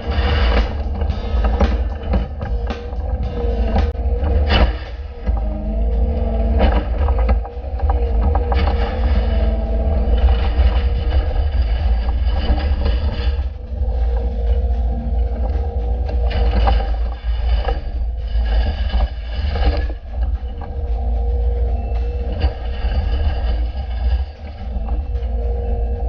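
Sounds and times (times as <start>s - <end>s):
excavator diesel engine rumbling: 0.0s - 26.0s
grinding and scraping: 0.0s - 26.0s.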